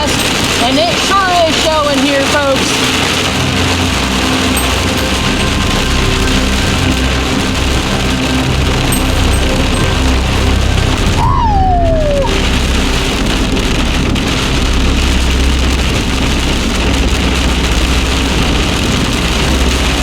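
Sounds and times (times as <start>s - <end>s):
heavy rain and wind on vehicle: 0.0s - 20.0s
falling tone: 9.0s - 13.2s.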